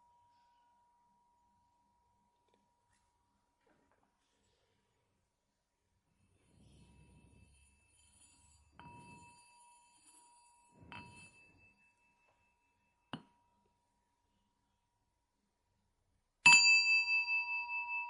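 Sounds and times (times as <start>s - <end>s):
small bell ringing: 6.3s - 13.9s, 16.4s - 18.0s.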